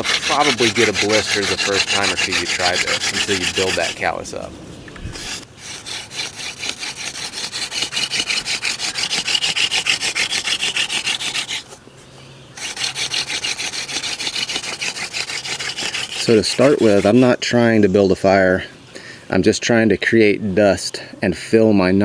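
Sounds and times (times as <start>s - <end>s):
hand drill spindle rasping on wood: 0.0s - 4.4s, 5.1s - 11.8s, 12.6s - 17.5s.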